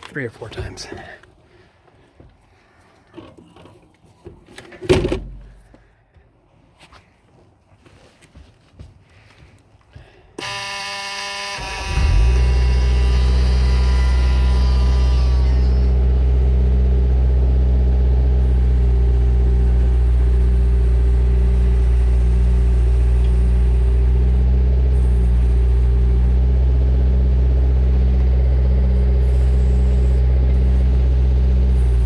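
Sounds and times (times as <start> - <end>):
excavator diesel engine running: 10.4 - 32.0.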